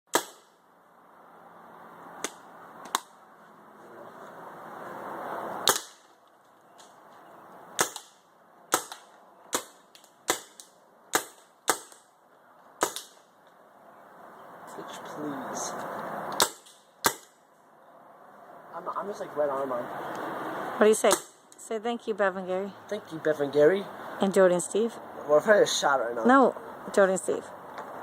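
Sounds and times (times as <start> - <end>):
paintball gun shots: 7.8 - 12.1, 12.8 - 13.2.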